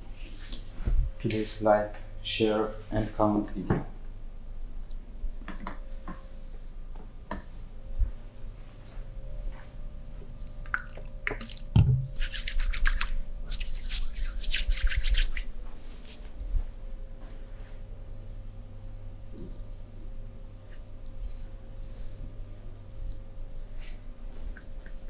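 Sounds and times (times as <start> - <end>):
rubbing strokes on body: 12.2 - 16.4, 22.9 - 25.0.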